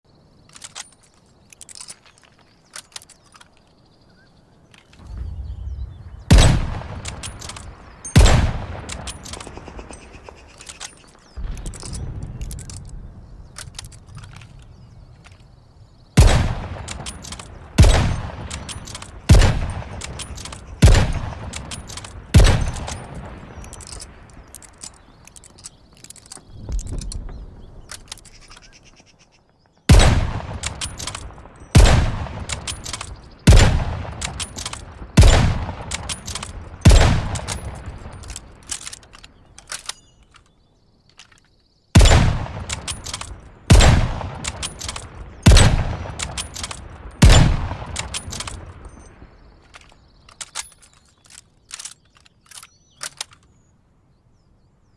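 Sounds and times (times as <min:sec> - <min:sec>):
rifle shots ringing out: 0:06.3 - 0:12.9, 0:16.2 - 0:25.6, 0:29.9 - 0:40.1, 0:42.0 - 0:51.1.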